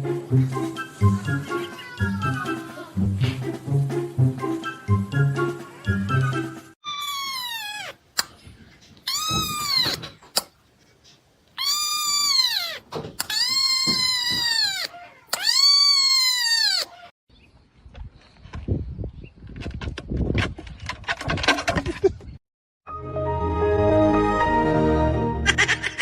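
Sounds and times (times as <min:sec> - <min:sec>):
cat meowing loudly: 0:06.8 - 0:08.0, 0:09.1 - 0:10.0, 0:11.6 - 0:17.1.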